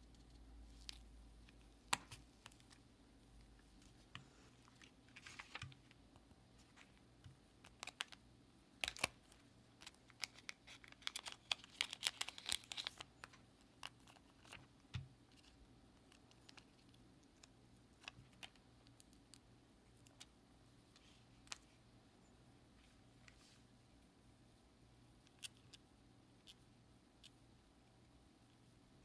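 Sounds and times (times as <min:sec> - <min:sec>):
rustling: 0:03.6 - 0:07.0.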